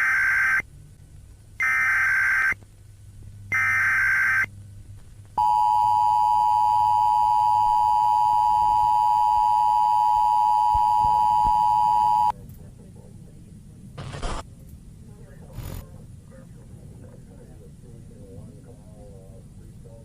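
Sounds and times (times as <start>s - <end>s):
two-tone attention signal: 5.4s - 12.3s.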